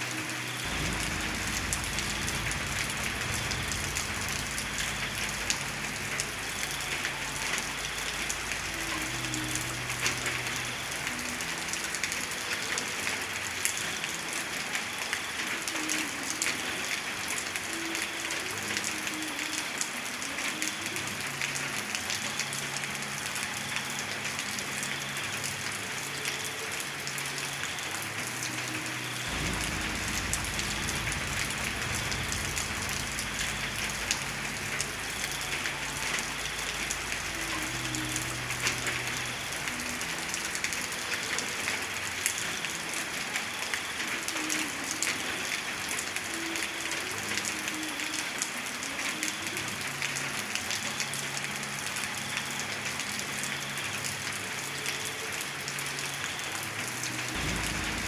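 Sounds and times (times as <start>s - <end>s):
rain falling: 0.0s - 58.0s
low rumble: 29.3s - 34.8s, 57.4s - 58.0s.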